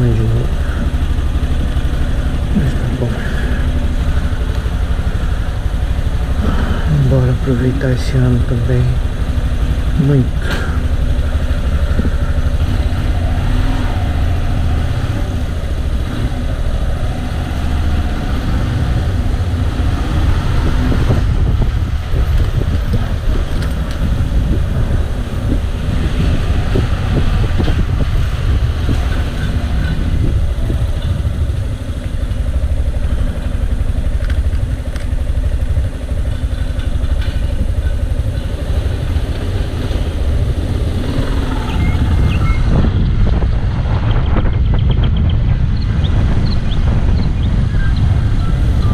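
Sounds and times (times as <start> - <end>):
motorcycle engine running: 0.0 - 48.9.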